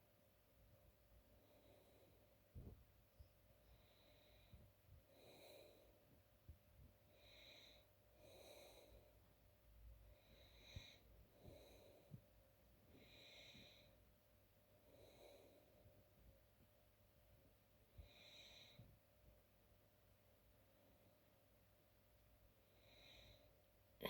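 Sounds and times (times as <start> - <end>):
person breathing faintly: 1.4 - 6.2, 10.0 - 16.1.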